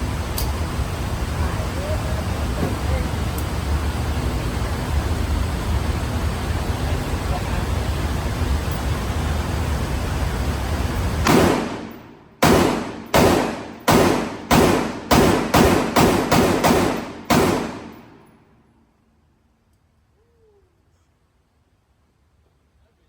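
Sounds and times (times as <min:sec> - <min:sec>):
gunshots ringing out: 0:11.2 - 0:18.2.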